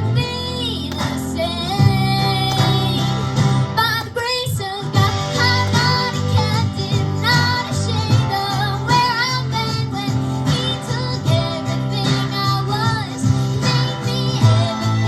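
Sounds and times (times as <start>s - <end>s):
steady bass: 0.0s - 4.0s
guitar: 0.0s - 15.0s
young women singing worship song: 0.5s - 8.1s.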